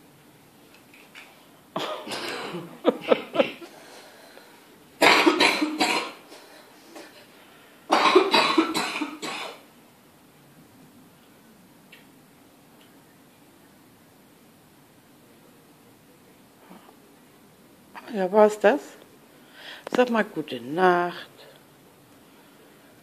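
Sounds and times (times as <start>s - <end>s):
harsh hacking coughs: 1.8s - 3.7s, 5.0s - 6.4s, 7.9s - 9.6s.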